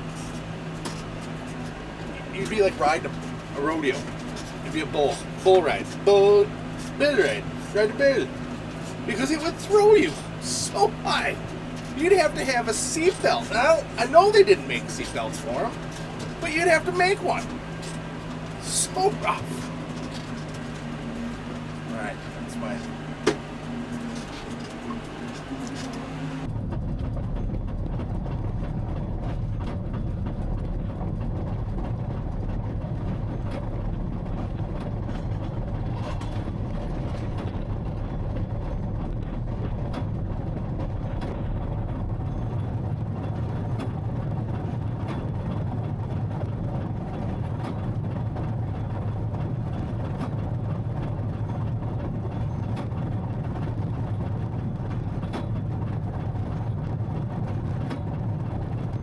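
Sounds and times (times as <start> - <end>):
tractor engine running: 0.0 - 26.5.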